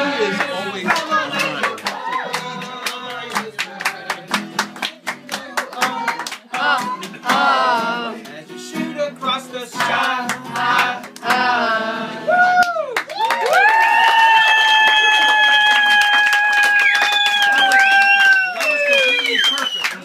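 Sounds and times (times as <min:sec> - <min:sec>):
music: 0:00.0 - 0:12.3
group singing: 0:00.0 - 0:12.4
hands clapping rhythmically: 0:00.3 - 0:08.8, 0:09.7 - 0:11.7, 0:12.5 - 0:20.0.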